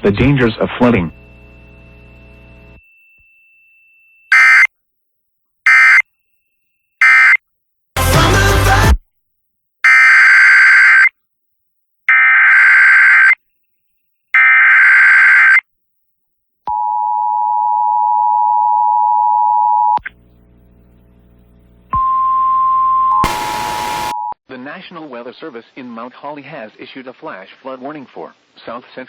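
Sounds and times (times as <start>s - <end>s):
low hum: 0.0s - 2.8s.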